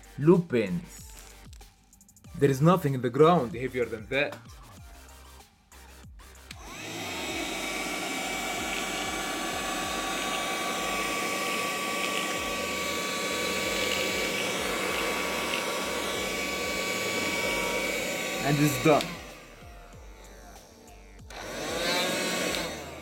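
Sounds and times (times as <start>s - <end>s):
vacuum cleaner whine: 6.6s - 23.0s.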